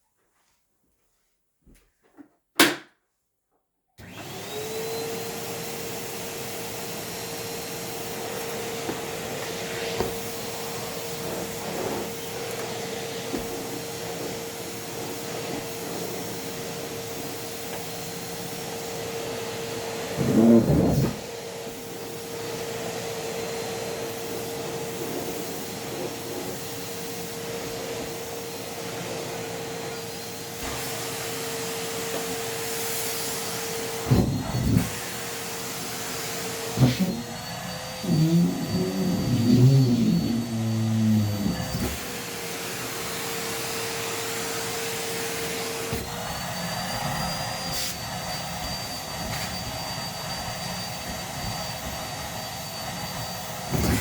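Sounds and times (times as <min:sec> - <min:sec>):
vacuum cleaner running: 0:04.0 - 0:54.0
wavering low sounds of blocked hose: 0:38.0 - 0:41.9.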